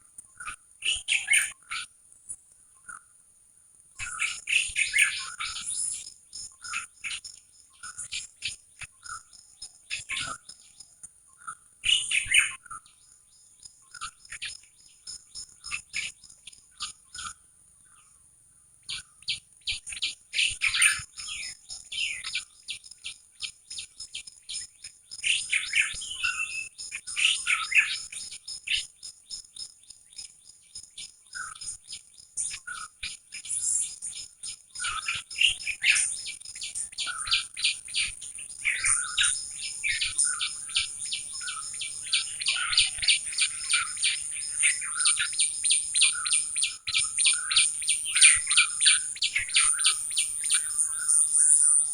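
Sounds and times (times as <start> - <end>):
small birds chirping: 0.2 - 1.9, 4.0 - 51.9.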